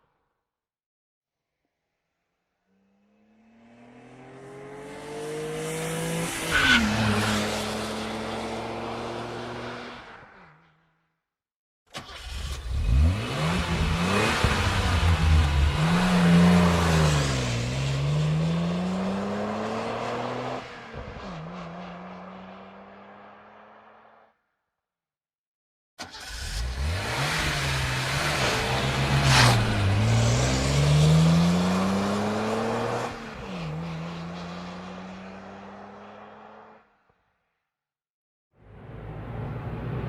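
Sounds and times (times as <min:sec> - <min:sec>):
car engine starting and revving: 0:11.9 - 0:20.7, 0:26.0 - 0:36.7
car engine revving: 0:12.0 - 0:20.7, 0:26.0 - 0:36.7.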